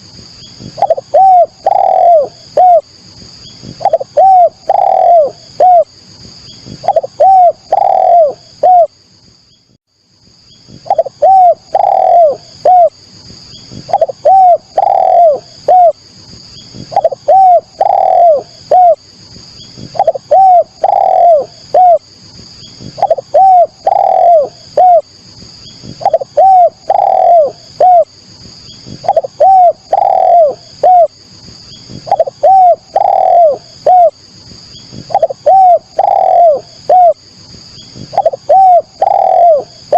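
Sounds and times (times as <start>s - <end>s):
steady high-pitched whine: 0.0s - 39.9s
dove cooing: 0.6s - 2.9s, 3.6s - 5.9s, 6.7s - 9.0s, 10.7s - 13.0s, 13.7s - 16.0s, 16.8s - 19.0s, 19.8s - 22.1s, 22.8s - 25.1s, 25.8s - 28.1s, 28.8s - 31.2s, 31.9s - 34.2s, 34.9s - 37.2s, 38.0s - 39.9s.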